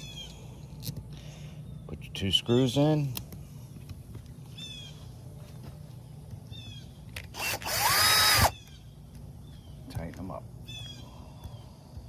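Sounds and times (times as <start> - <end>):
low steady hum: 0.0 - 12.0
bird chirping: 4.5 - 5.1, 6.0 - 7.1, 8.2 - 11.8
power driver whirring: 7.2 - 8.6.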